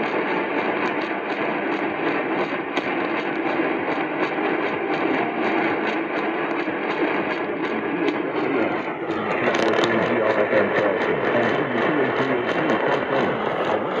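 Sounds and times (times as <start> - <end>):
interference ticking: 0.0 - 14.0
radio static hiss: 0.0 - 14.0
garbled voice on radio: 7.5 - 14.0.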